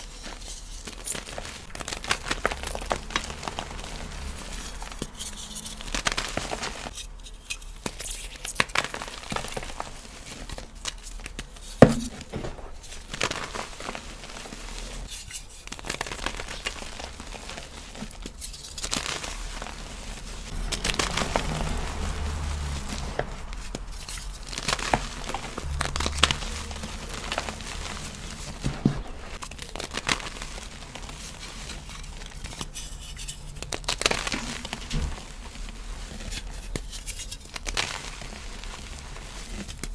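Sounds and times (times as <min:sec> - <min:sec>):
chalk crunching and crackling: 0:00.0 - 0:39.9.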